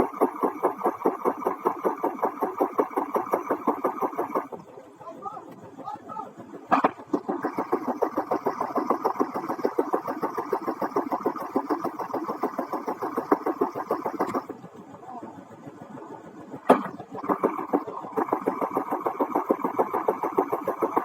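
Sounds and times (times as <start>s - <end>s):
engine running with rapid pulse: 0.0s - 21.0s.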